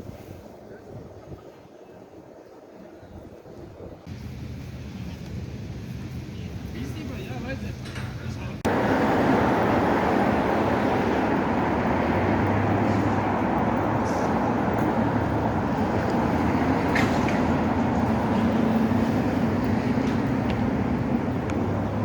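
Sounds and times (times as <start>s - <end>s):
street traffic noise: 4.1s - 22.0s
low engine hum: 8.5s - 22.0s.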